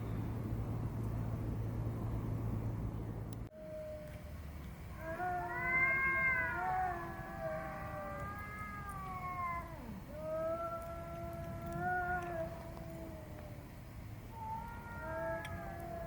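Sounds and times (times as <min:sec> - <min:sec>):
cat meowing: 0:05.0 - 0:13.5, 0:14.3 - 0:16.0.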